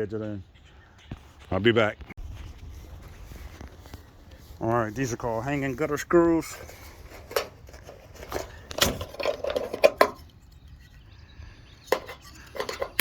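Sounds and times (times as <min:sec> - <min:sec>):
metal hangers and screws clinking: 0:11.9 - 0:13.0.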